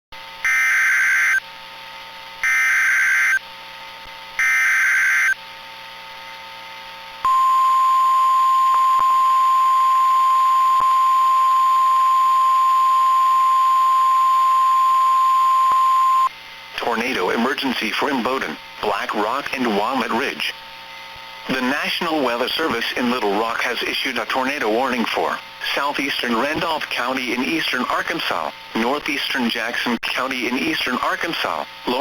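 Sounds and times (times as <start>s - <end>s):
harsh buzzing data bursts: 0.2s - 1.6s, 2.4s - 3.6s, 4.3s - 5.4s
steady alarm tone: 0.4s - 1.5s, 2.4s - 3.4s, 4.4s - 5.4s, 7.2s - 16.3s
faint radio hiss: 16.6s - 32.0s.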